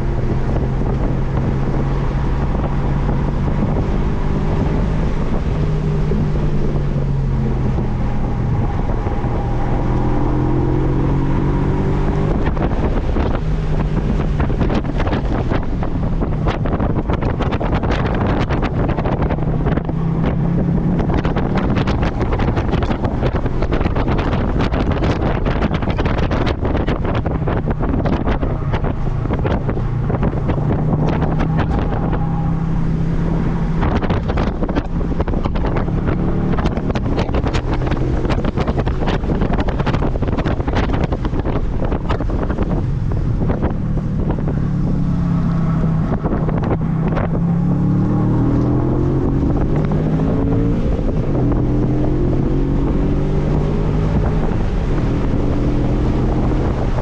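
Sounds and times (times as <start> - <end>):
car engine accelerating: 0.0 - 57.0
wind buffeting microphone: 0.0 - 57.0.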